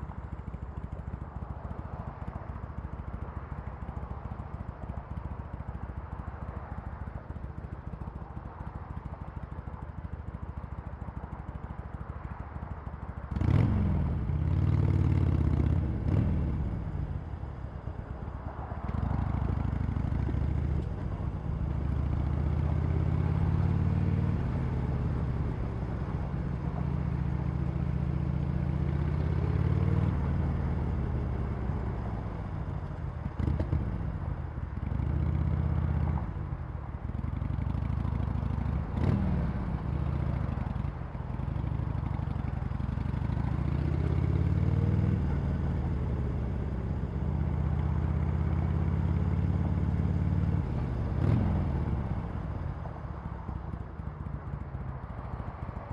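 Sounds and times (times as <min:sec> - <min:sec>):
motorcycle engine revving: 0:13.3 - 0:16.8, 0:37.3 - 0:40.8, 0:41.6 - 0:52.4.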